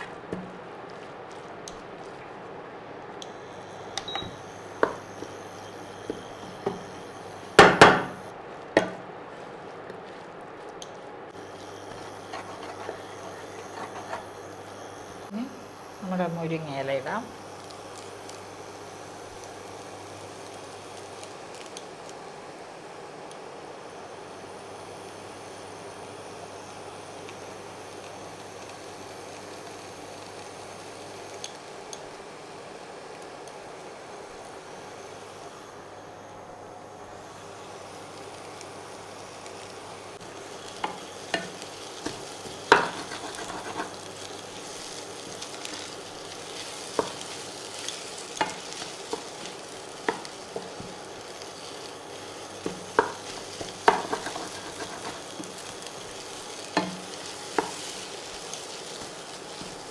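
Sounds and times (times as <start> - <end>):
pan frying food: 0.0 - 36.0, 36.6 - 59.9
utensils knocking against pan: 7.6 - 8.1, 40.8 - 43.9, 48.4 - 49.3, 52.6 - 55.6, 56.8 - 57.8.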